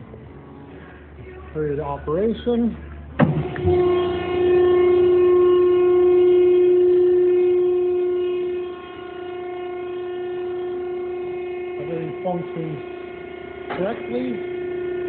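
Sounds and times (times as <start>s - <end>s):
hydraulic pump motor whining: 3.2s - 15.0s.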